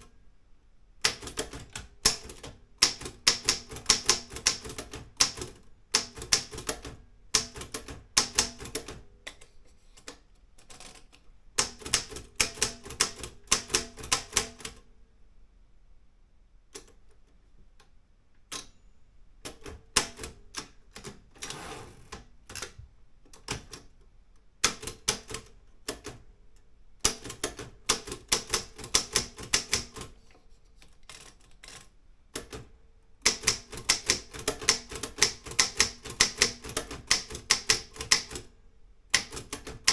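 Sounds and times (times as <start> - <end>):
typewriter key strikes: 33.2 - 38.5, 39.2 - 39.9.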